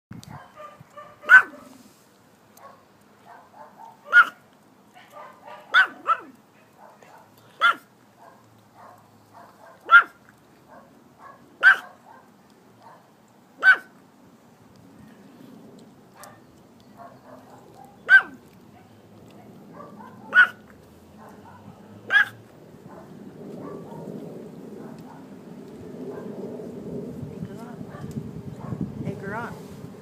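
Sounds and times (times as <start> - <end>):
dog barking: 0.3 - 1.8, 2.6 - 4.4, 5.0 - 13.9, 16.2 - 16.4, 17.0 - 20.6, 21.2 - 24.1, 24.8 - 25.3, 26.1 - 26.4, 27.9 - 28.8.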